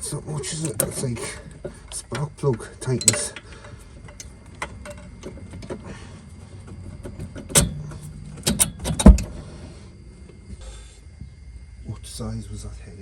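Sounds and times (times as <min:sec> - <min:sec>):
metal hand tools clanking: 0:00.4 - 0:05.8
sharp knocks: 0:08.9 - 0:09.4.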